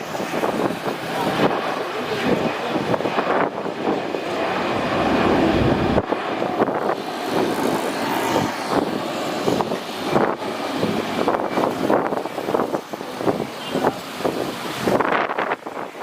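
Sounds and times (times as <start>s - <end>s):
jet engine noise: 0.0s - 16.0s
wind buffeting microphone: 0.0s - 16.0s.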